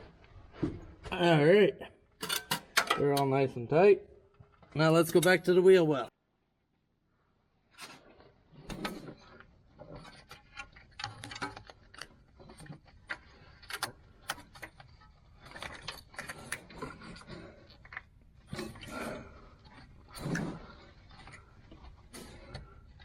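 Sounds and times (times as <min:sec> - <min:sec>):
tools clicking and knocking on parts: 0:02.2 - 0:03.3.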